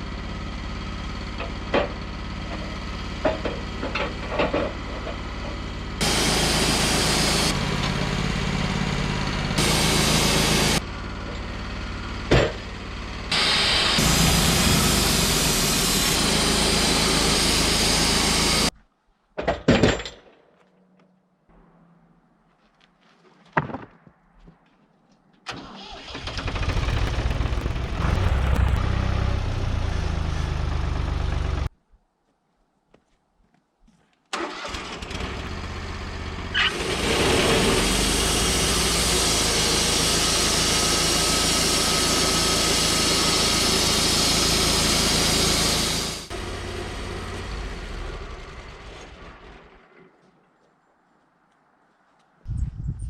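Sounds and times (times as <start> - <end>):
small sawmill engine running: 0.0 - 18.7, 25.6 - 31.7, 34.4 - 50.1
saw cutting through log: 6.0 - 10.8, 13.3 - 18.7, 26.3 - 30.9, 35.2 - 49.1.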